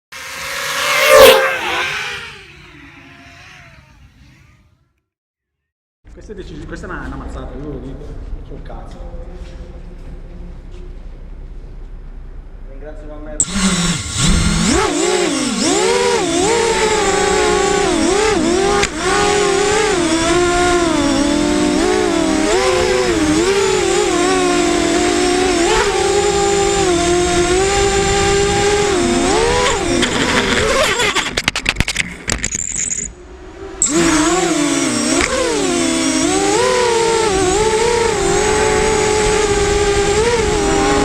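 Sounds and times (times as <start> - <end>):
quadcopter motors whining: 0.1 - 5.0, 13.4 - 41.0.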